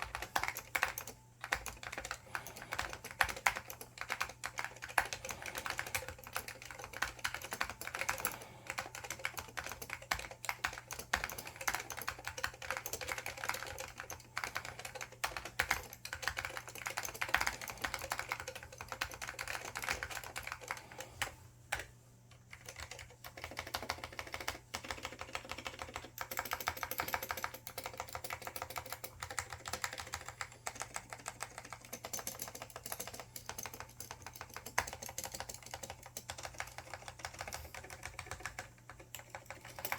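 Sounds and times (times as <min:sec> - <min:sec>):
fast typing on keyboard: 0:00.0 - 0:21.9, 0:22.5 - 0:39.9.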